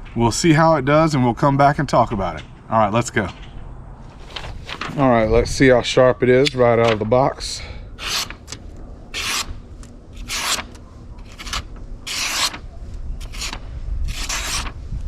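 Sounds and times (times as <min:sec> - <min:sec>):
knife blade slicing: 0:10.2 - 0:12.6.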